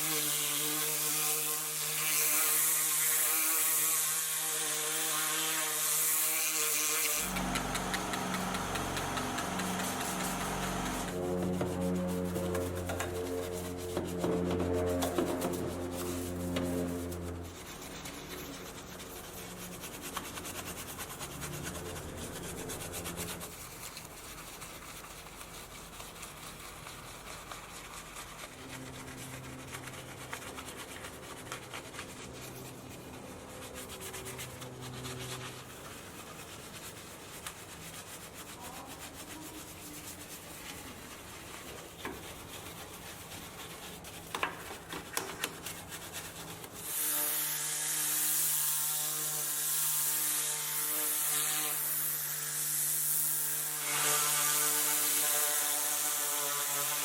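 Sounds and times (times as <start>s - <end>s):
sharp scrapes: 1.2s - 55.2s
scrubbing on car surface: 7.1s - 47.0s.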